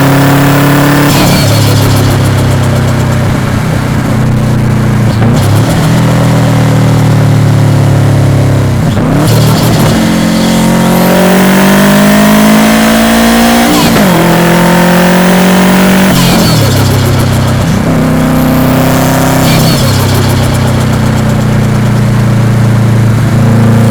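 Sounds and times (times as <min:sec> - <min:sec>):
car engine running: 0:00.0 - 0:23.9.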